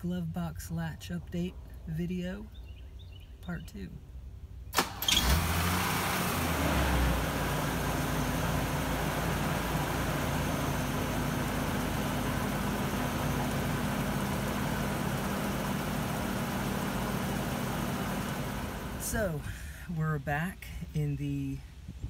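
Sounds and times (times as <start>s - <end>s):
car engine idling: 4.8s - 20.2s.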